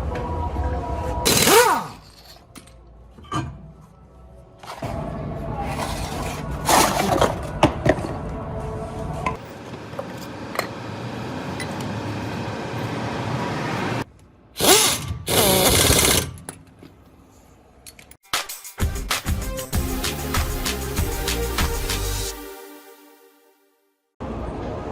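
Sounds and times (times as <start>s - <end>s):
power tool rattling and hammering: 14.6s - 16.4s.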